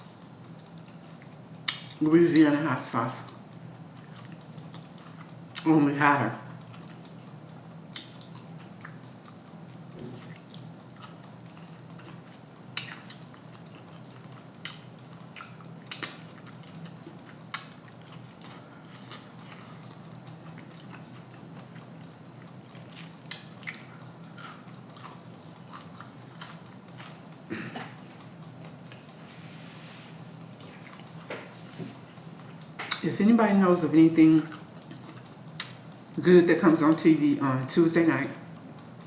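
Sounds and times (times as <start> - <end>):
steady low hum: 0.0 - 39.0
person chewing fried food: 3.3 - 5.6, 6.5 - 27.5, 30.2 - 33.0, 34.4 - 36.1.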